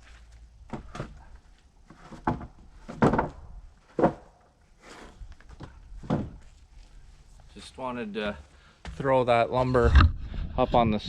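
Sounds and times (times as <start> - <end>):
wooden boards thunking: 2.0 - 4.4, 5.5 - 6.4.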